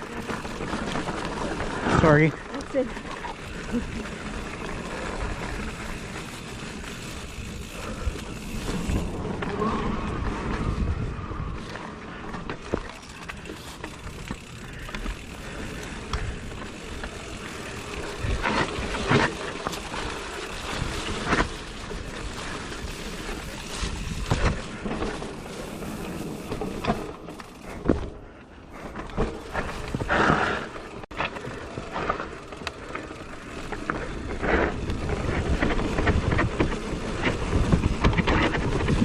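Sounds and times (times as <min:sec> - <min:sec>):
bike riding rumble: 0:00.0 - 0:39.0
bike knocks and rattles: 0:11.7 - 0:39.0.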